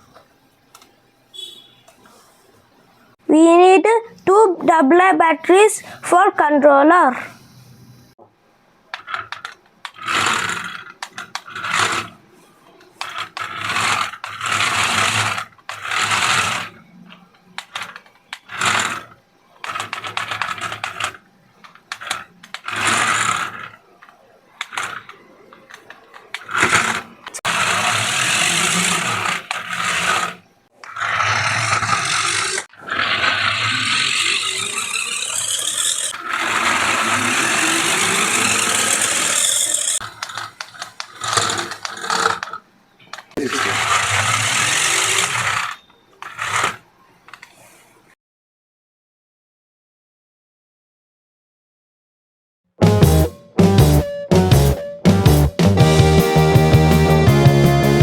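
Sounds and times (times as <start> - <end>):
toy car electric motors whirring: 8.9 - 48.0.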